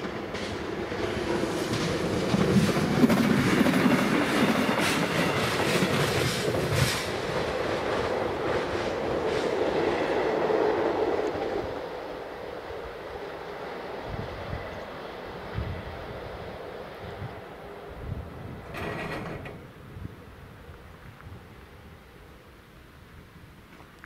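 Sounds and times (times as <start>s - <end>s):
rumbling mechanical noise: 18.1s - 20.0s.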